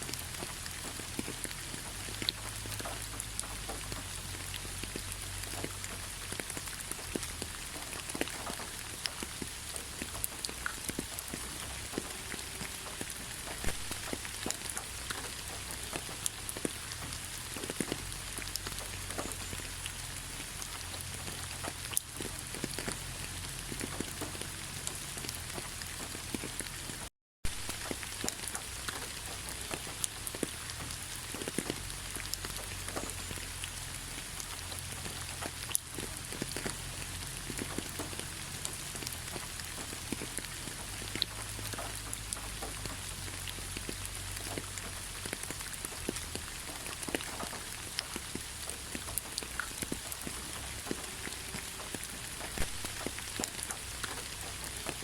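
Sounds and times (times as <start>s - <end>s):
rain drops ticking on surface: 0.0s - 55.0s.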